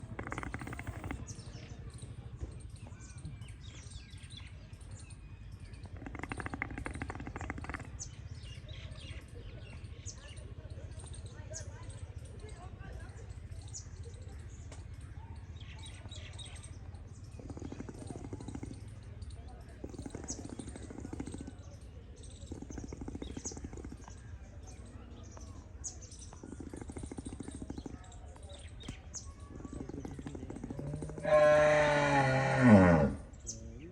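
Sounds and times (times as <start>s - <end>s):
birds chirping: 0.0s - 33.9s
harsh rapidly pulsing rattle: 16.6s - 24.9s, 26.4s - 31.2s.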